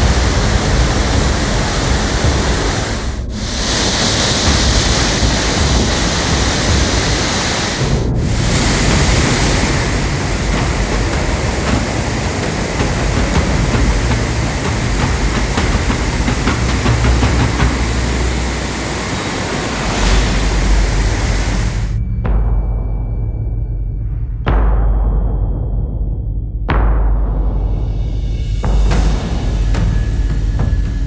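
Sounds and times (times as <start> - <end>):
waterfall rushing: 0.0 - 22.0.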